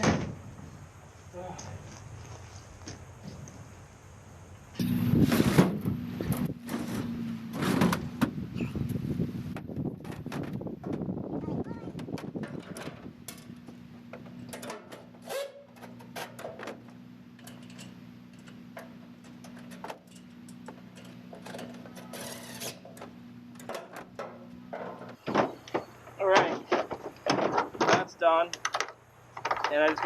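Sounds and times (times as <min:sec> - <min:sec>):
low machine hum: 0:00.3 - 0:28.2
metallic clicks and knocks: 0:12.0 - 0:15.1, 0:15.7 - 0:30.0.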